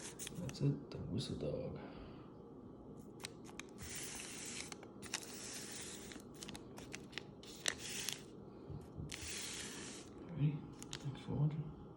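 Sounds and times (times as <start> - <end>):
paper wrapper crinkling: 3.2 - 8.3, 10.8 - 11.1.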